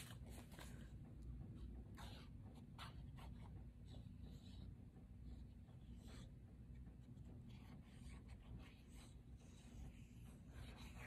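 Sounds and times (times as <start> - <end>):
low steady hum: 0.0 - 11.0
paper scratching and rubbing: 7.5 - 11.0.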